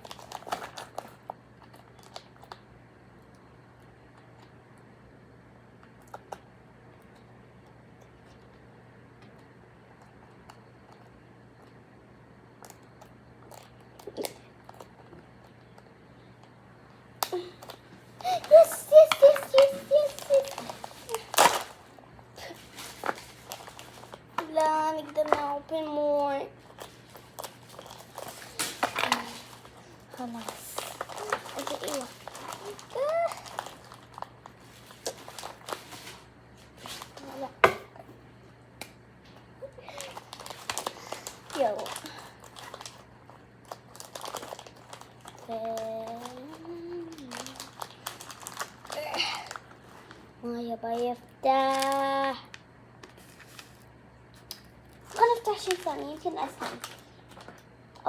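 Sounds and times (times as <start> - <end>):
toy pieces and packaging clicking: 17.2 - 21.8, 26.2 - 36.2, 39.9 - 43.0, 43.7 - 49.6, 54.4 - 58.0.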